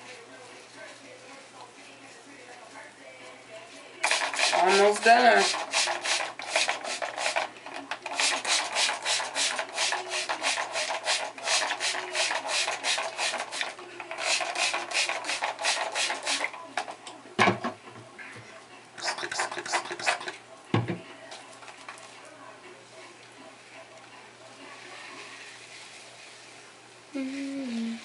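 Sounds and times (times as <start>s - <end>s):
hair being rubbed: 4.0s - 16.6s, 19.0s - 20.4s, 24.7s - 28.0s.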